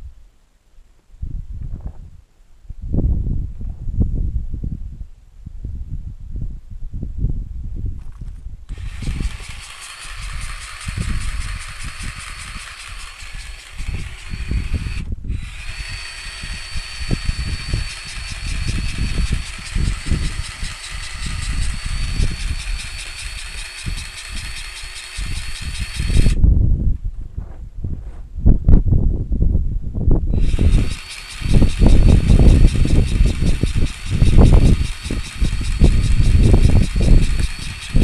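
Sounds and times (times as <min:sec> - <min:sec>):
gusty low rumble: 0:01.1 - 0:38.0
electric power tool motor whining: 0:08.7 - 0:26.4, 0:30.3 - 0:38.0.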